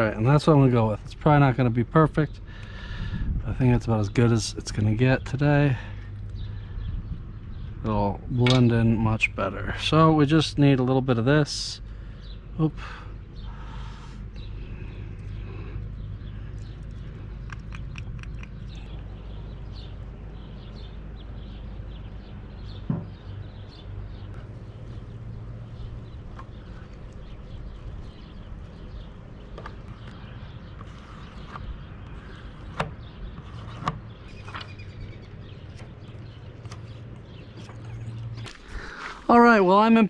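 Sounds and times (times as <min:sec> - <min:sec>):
steady low hum: 0:00.0 - 0:40.0
sharp knocks: 0:22.8 - 0:23.2.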